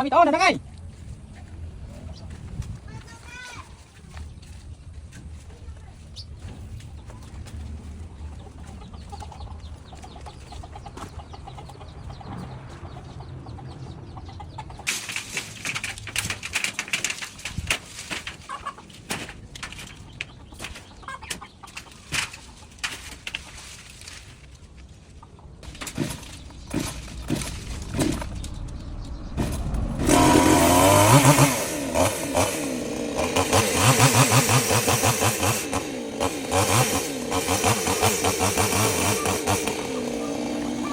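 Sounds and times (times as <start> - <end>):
chickens clucking: 0.6 - 40.9
knocks and rustles: 2.2 - 11.4, 14.7 - 30.9
wings flapping: 14.6 - 35.8
chainsaw engine running: 14.9 - 20.0, 25.6 - 40.9.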